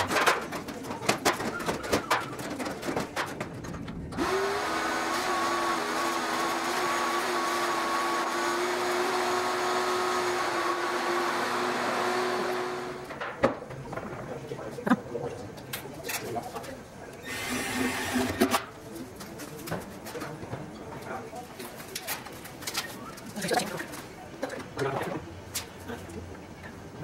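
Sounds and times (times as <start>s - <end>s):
vacuum cleaner running: 4.2s - 13.1s.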